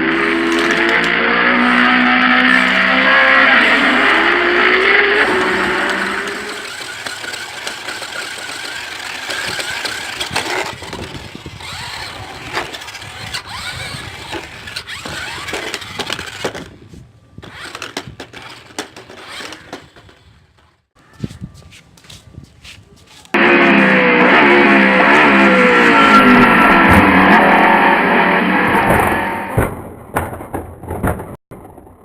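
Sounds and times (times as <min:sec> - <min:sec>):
toy car motors whirring: 0:00.0 - 0:20.8
toy car knocking on ground: 0:00.2 - 0:01.2, 0:04.6 - 0:16.8, 0:17.4 - 0:20.7, 0:28.7 - 0:31.9
scattered clicks: 0:03.6 - 0:16.7.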